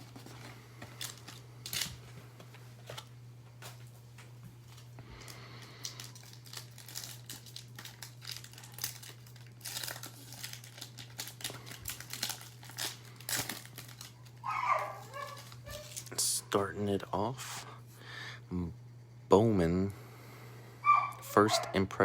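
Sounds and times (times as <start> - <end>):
plastic wrapping crinkling: 0.0 - 16.3
low electrical hum: 0.0 - 22.0.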